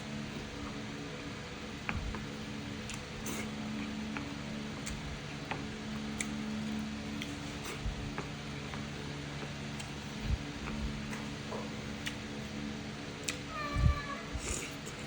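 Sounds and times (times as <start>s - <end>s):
steady low hum: 0.0s - 15.0s
chewing clicks and mouth smacks: 1.8s - 13.5s.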